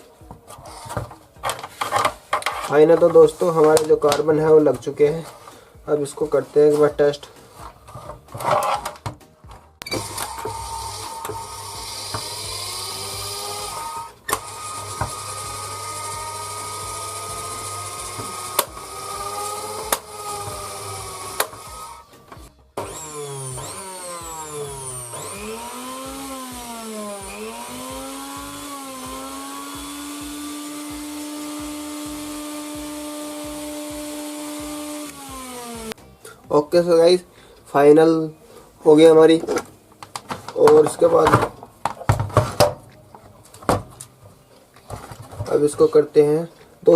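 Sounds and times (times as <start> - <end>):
grinder motor whining: 9.8 - 36.0.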